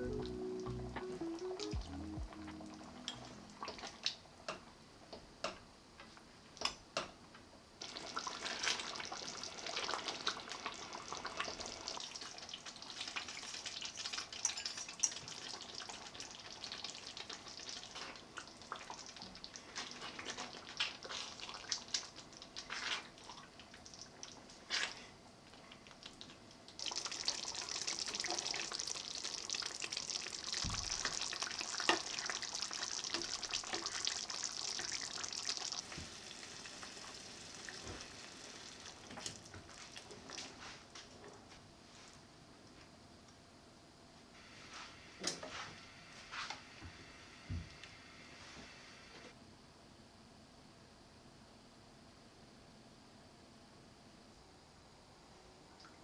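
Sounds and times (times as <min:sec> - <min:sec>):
food frying in a pan: 0:07.8 - 0:41.1
utensils clinking: 0:14.3 - 0:15.3.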